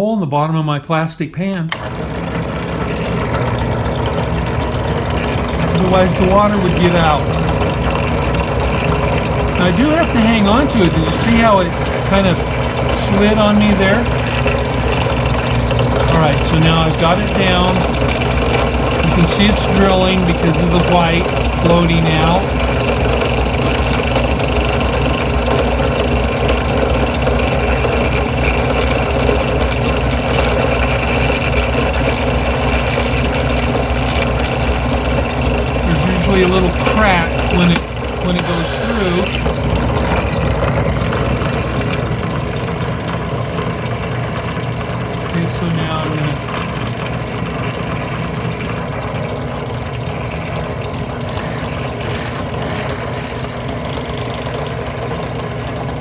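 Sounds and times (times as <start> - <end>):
drill press humming: 1.7 - 56.0
drill bit drilling through glass: 1.8 - 7.5, 9.6 - 18.2, 35.9 - 39.7.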